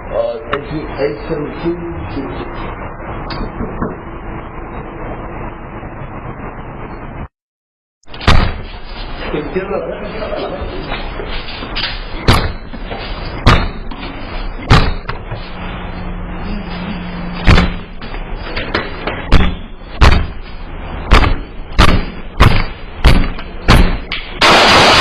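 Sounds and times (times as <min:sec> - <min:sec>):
heavy thuds on a door: 0:08.2 - 0:08.7, 0:12.2 - 0:12.7, 0:13.4 - 0:13.9, 0:14.6 - 0:15.3, 0:17.4 - 0:18.0, 0:19.3 - 0:20.4, 0:21.1 - 0:24.1.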